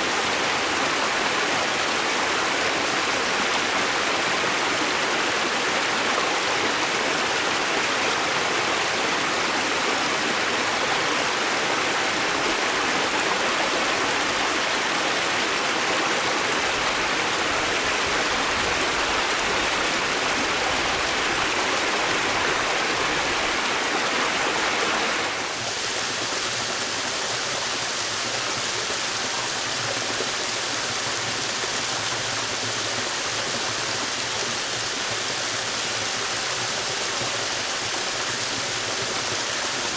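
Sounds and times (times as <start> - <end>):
stream rushing over rocks: 21.2 - 39.9.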